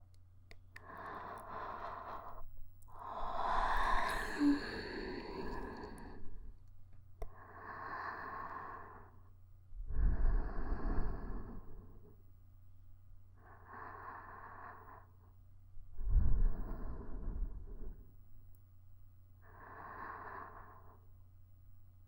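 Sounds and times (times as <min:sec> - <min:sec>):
woman breathing slowly: 0:00.8 - 0:06.6, 0:07.2 - 0:12.2, 0:13.4 - 0:18.3, 0:19.4 - 0:21.2
low rumble: 0:15.8 - 0:18.1.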